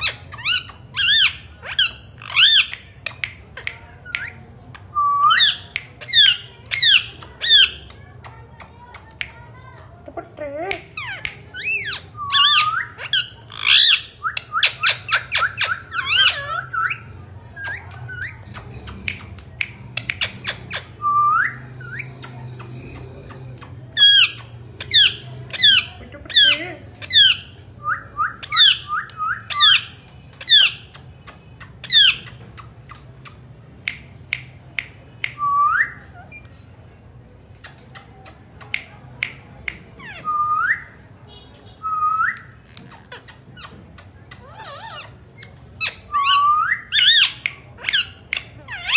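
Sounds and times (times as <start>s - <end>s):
parakeet squawking: 0.0s - 3.4s, 5.3s - 7.9s, 10.8s - 19.4s, 23.7s - 27.6s, 28.3s - 33.4s, 42.7s - 48.9s.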